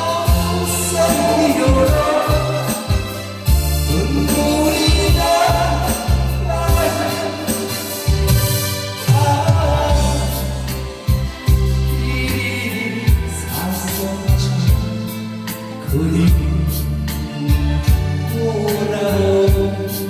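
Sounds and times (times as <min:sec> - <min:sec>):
repeating bass line: 0:00.0 - 0:15.2
song with band accompaniment: 0:00.0 - 0:20.0.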